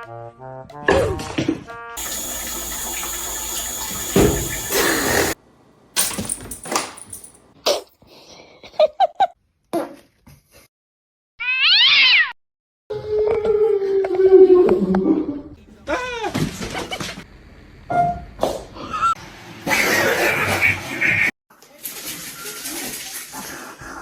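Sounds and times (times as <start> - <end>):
cat meowing: 11.4 - 12.4.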